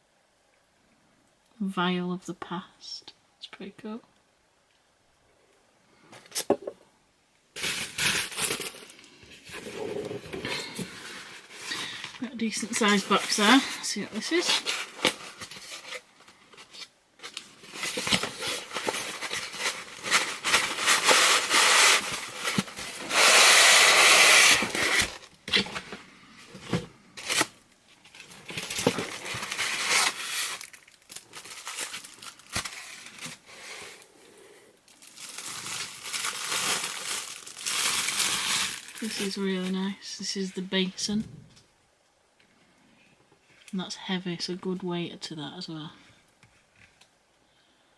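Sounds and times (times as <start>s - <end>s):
packing paper crumpling: 7.6s - 25.9s, 26.5s - 34.0s, 34.9s - 39.6s
cardboard box being opened: 28.1s - 30.8s.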